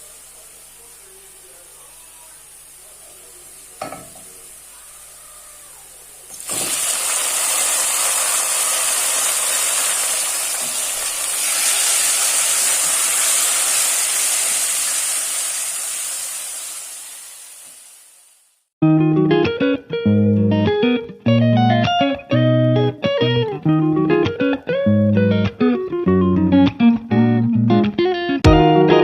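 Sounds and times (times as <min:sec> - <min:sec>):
food sizzling in hot oil: 0:06.3 - 0:18.7.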